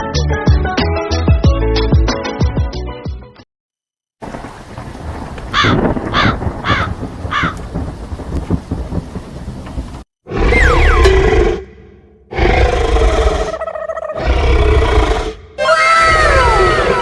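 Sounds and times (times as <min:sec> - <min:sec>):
rain hiss: 0:04.2 - 0:10.0
low rumbling thunder: 0:04.2 - 0:11.1
high cawing calls: 0:05.5 - 0:07.8.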